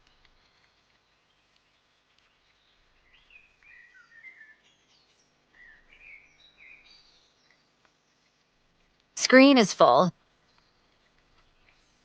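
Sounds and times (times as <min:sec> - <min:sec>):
faint songbird chirping: 0:02.3 - 0:07.6.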